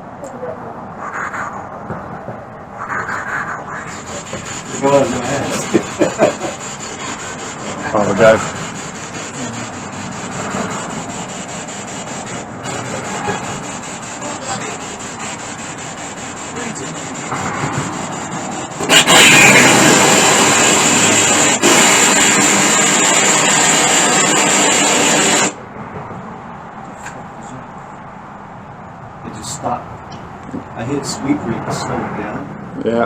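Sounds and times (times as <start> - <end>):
radio static hiss: 2.8 - 25.6.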